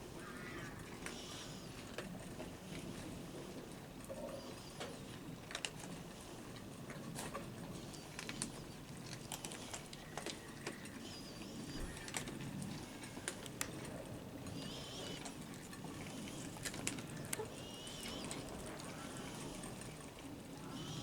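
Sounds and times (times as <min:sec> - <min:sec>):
cats crunching food: 0:05.1 - 0:20.5.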